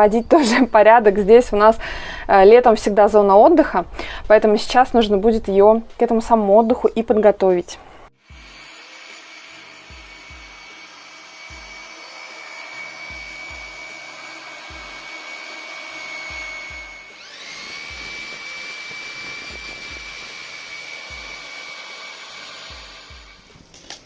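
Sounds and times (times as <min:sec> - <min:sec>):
garden power tool whining: 0:08.1 - 0:24.0.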